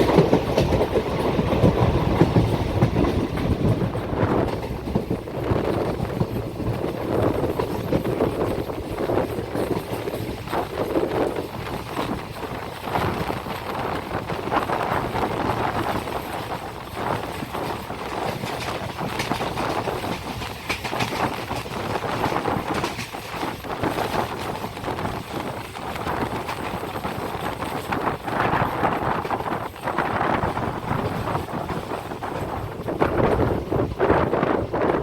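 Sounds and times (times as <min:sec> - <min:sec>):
train rushing along track: 0:00.0 - 0:35.0
wheels clacking over rails: 0:00.0 - 0:35.0.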